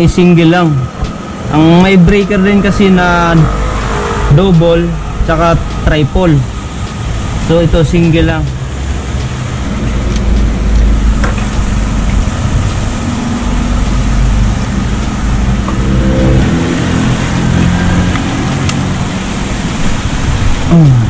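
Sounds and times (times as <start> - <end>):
engine deep rumble: 0.0 - 21.0
humming tone: 10.9 - 19.4.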